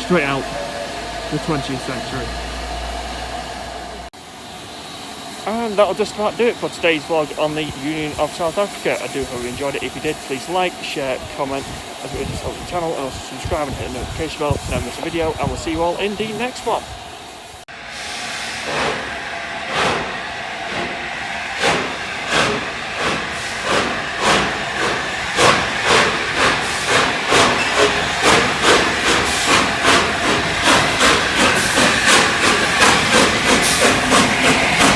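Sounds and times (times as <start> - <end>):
steam hissing: 0.0 - 34.9
steam locomotive exhaust chuffs: 0.0 - 34.9.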